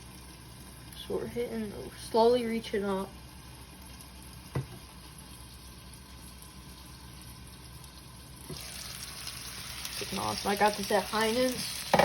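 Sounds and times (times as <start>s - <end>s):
steak sizzling in a frying pan: 0.0s - 12.0s.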